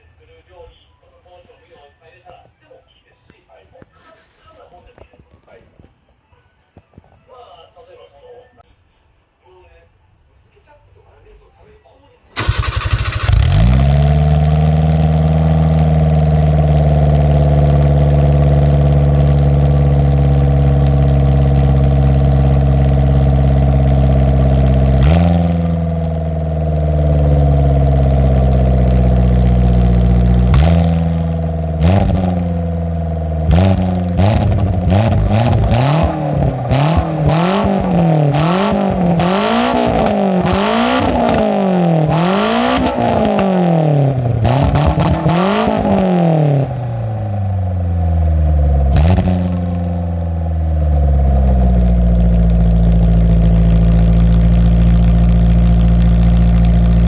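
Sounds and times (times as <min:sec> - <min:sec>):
loud car engine idling and revving: 0:12.4 - 0:57.0.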